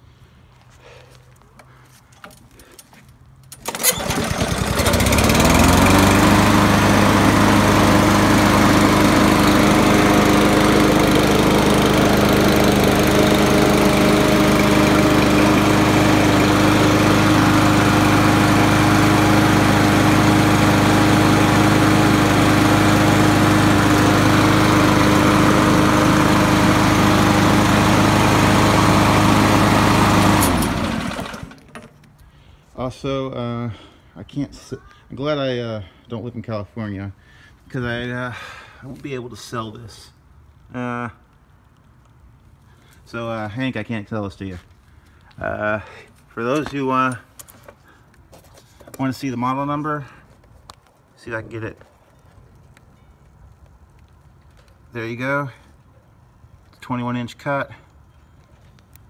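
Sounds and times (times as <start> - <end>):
lawnmower engine starting and running: 0.8 - 32.5, 44.6 - 59.0.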